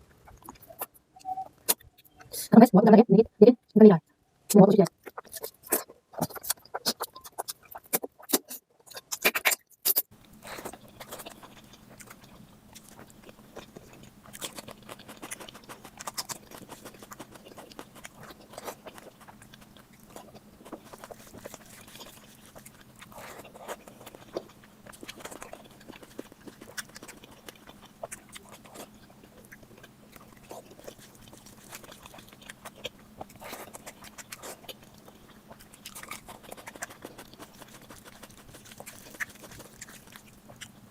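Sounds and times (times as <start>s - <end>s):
wet chewing and lip-smacking: 0.0s - 2.3s, 4.9s - 40.9s
steady low hum: 10.1s - 40.9s.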